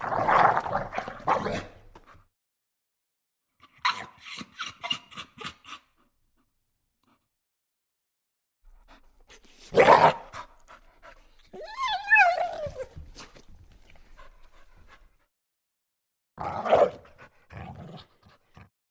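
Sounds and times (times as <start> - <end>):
dog whimpering: 11.5 - 13.3
dog growling: 16.4 - 18.7.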